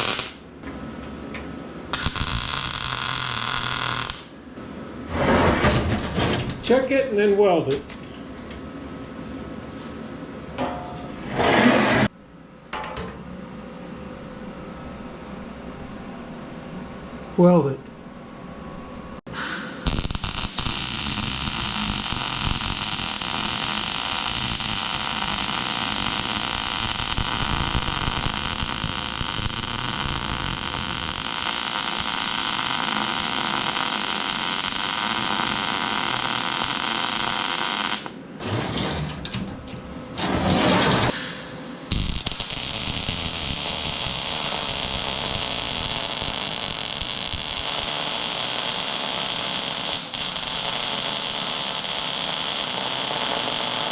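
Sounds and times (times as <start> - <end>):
arc welding crackling hiss: 0.0 - 0.4, 1.9 - 4.4, 19.3 - 38.1, 41.1 - 53.9.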